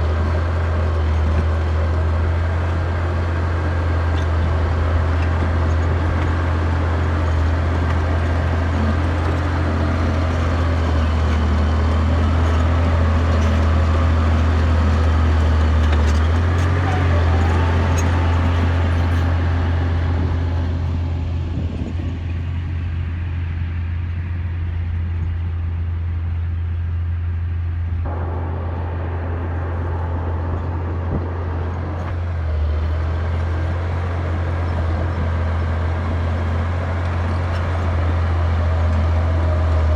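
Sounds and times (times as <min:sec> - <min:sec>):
bulldozer diesel engine: 0:00.0 - 0:39.9
track and ground clatter: 0:00.0 - 0:39.9.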